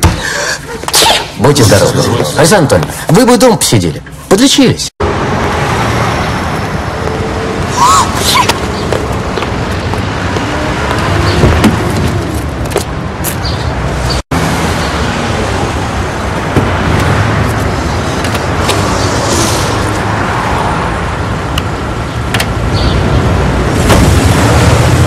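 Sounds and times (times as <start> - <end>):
road traffic noise: 0.0 - 25.0.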